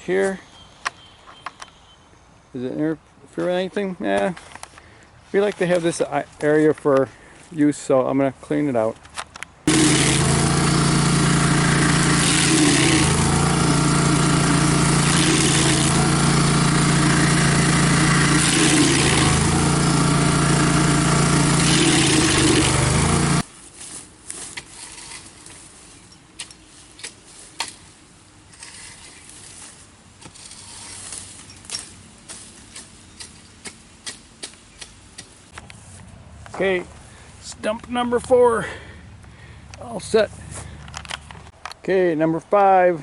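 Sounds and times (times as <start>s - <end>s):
cutter wheel rasping: 9.7s - 23.5s
stump grinder engine at full throttle: 9.7s - 23.5s.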